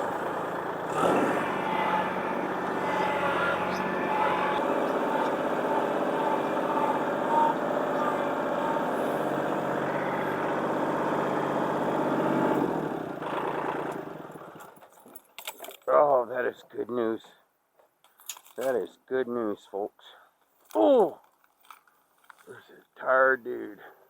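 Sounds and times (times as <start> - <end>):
truck engine idling: 0.0 - 14.6.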